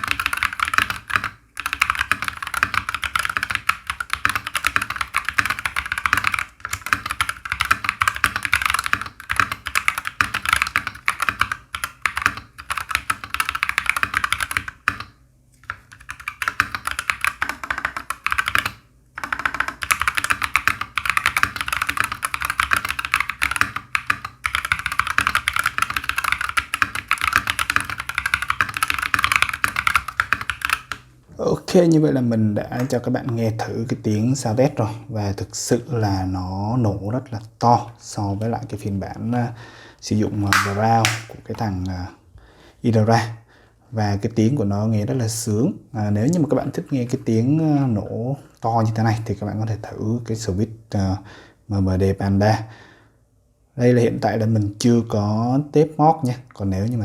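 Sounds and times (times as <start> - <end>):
mechanical keyboard typing: 0.0 - 31.0, 40.5 - 41.3.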